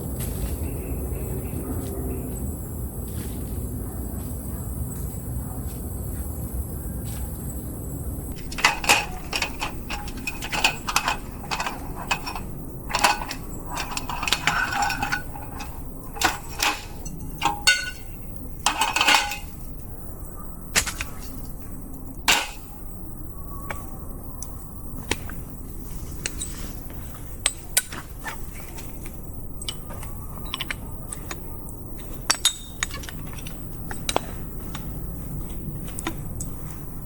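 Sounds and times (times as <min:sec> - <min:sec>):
low background noise: 0:00.0 - 0:37.0
cookware and utensils clinking: 0:08.3 - 0:35.0.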